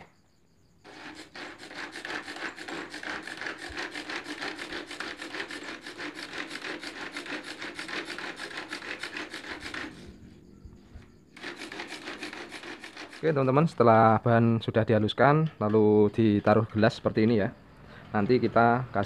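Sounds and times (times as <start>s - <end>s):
rasping grinding by hand: 0.8s - 10.3s, 11.0s - 14.2s.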